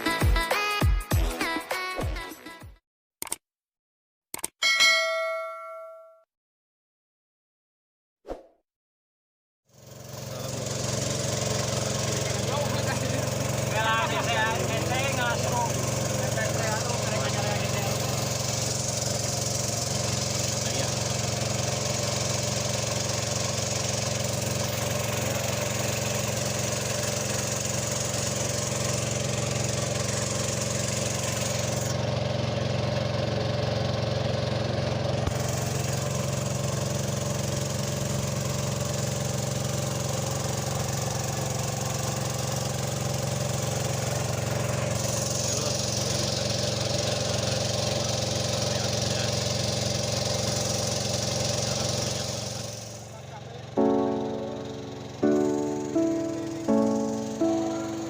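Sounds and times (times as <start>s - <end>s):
small engine running steadily: 9.7s - 58.0s.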